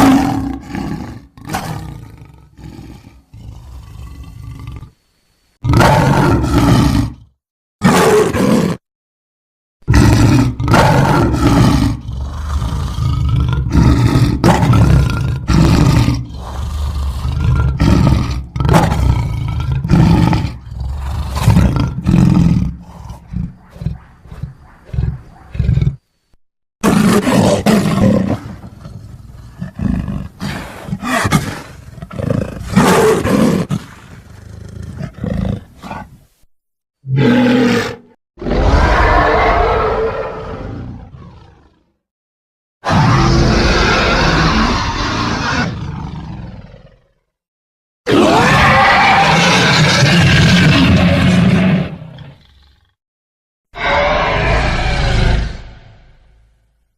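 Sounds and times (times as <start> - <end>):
monster roars and screeches: 37.1 - 41.1, 42.8 - 46.2, 48.1 - 52.4, 53.8 - 56.6.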